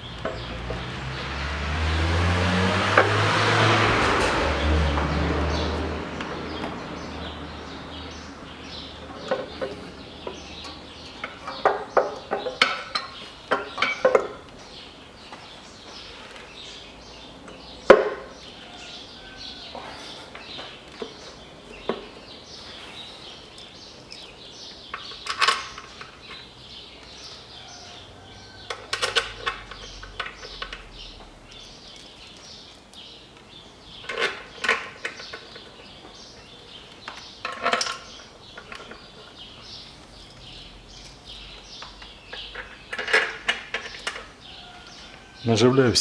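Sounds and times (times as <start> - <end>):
steel bolts clinking and rattling: 8.2 - 14.5, 23.2 - 27.4, 28.7 - 45.0.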